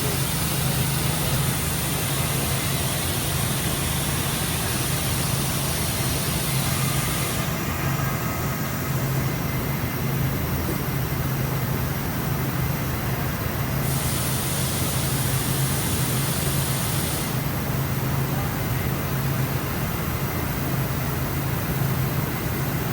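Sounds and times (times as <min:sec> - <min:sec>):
high hiss: 0:00.0 - 0:09.0
machining center low hum: 0:00.0 - 0:22.9.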